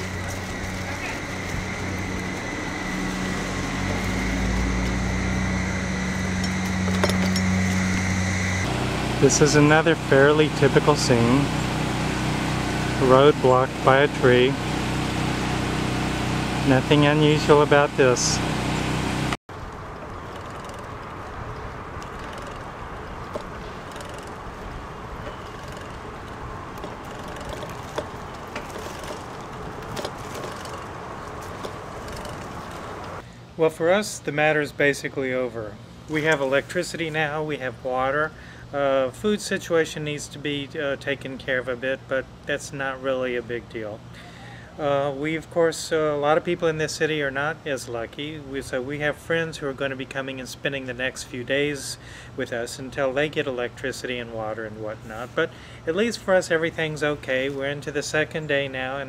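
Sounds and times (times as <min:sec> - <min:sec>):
car engine and road noise: 0:00.0 - 0:33.3.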